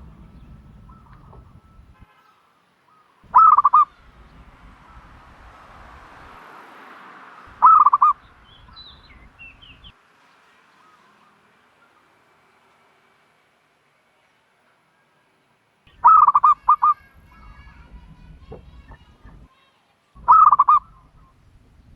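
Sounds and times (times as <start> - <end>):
dove calling: 0.0 - 2.0, 2.9 - 6.3, 7.4 - 9.9, 15.9 - 19.5, 20.2 - 21.9
small birds chirping: 0.0 - 6.3, 7.2 - 12.2, 15.9 - 19.5, 20.2 - 21.9.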